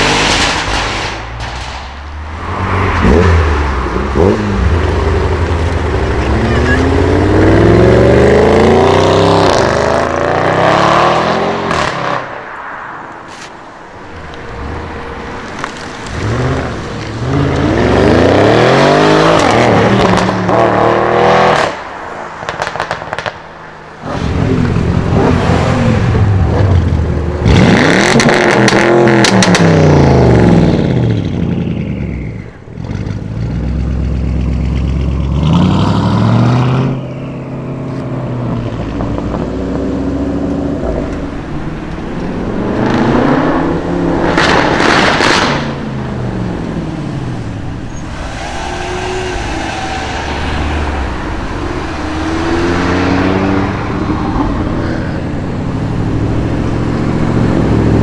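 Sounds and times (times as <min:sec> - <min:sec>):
car engine accelerating hard: 0:02.2 - 0:12.3, 0:14.1 - 0:21.8, 0:24.0 - 0:32.0, 0:32.8 - 0:58.0
exhaust crackles and pops: 0:22.4 - 0:25.4, 0:37.9 - 0:46.9.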